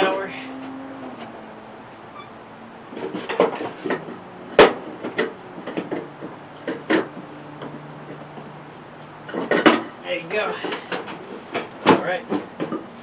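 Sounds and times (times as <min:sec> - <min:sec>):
metal knocks and clunks: 0:02.9 - 0:13.0.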